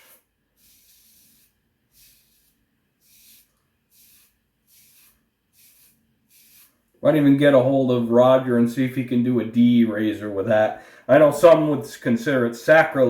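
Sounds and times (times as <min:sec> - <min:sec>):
razor scraping stubble: 0:00.0 - 0:06.8.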